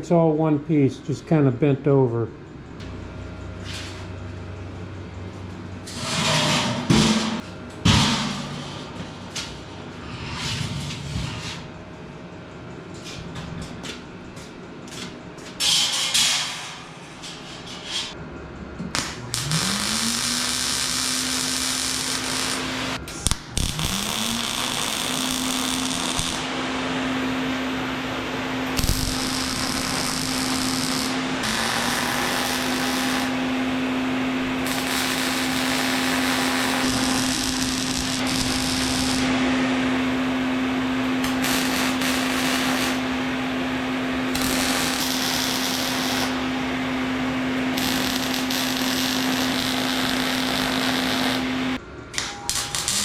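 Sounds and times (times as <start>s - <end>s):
angle grinder grinding metal: 23.7s - 26.4s, 28.8s - 33.4s, 34.6s - 39.4s, 41.2s - 43.1s, 44.3s - 46.5s, 47.7s - 51.8s, 52.6s - 53.0s.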